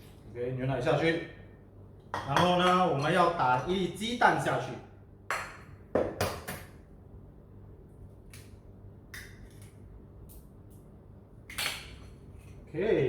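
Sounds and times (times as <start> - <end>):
egg cracking clicks and taps: 8.3 - 10.4.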